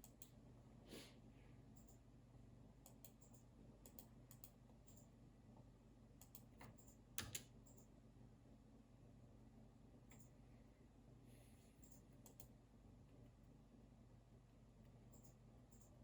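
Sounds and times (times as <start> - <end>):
keyboard keystrokes and clicks: 2.9 - 5.1, 6.2 - 7.9, 11.8 - 12.6.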